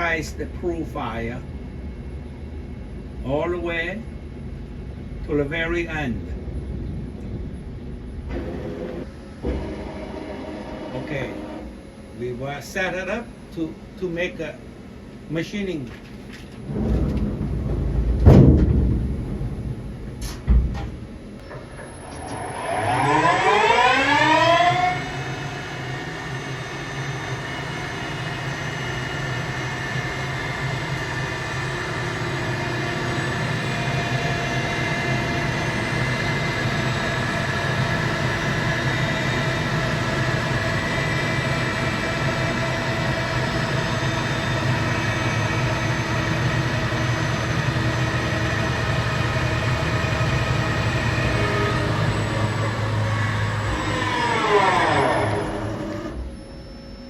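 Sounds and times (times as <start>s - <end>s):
machine hum with pitched tones: 0.0s - 57.0s
lathe spindle whine: 7.6s - 13.2s, 21.4s - 57.0s.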